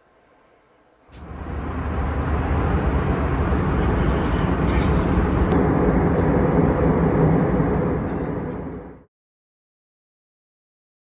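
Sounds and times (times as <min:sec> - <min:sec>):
loud vehicle rumble: 0:01.1 - 0:09.1.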